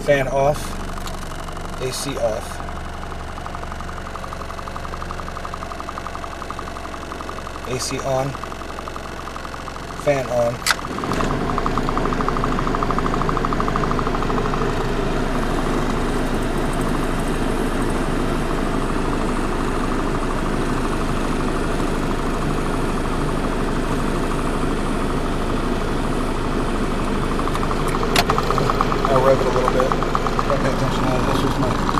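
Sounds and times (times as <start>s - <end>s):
car engine idling: 0.0s - 31.9s
cabin blower fan rushing: 7.6s - 31.9s.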